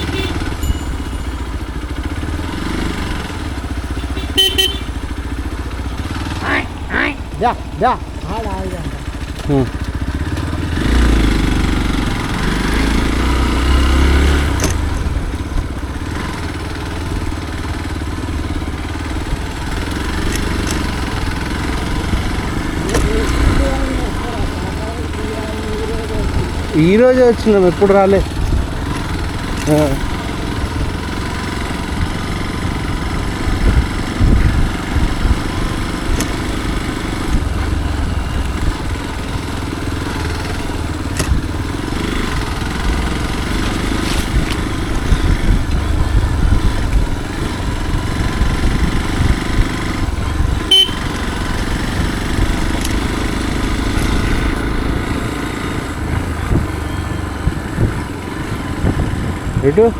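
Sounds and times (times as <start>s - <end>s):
motorcycle engine running: 0.0s - 59.9s
sharp clicks: 20.2s - 21.0s, 52.8s - 53.0s.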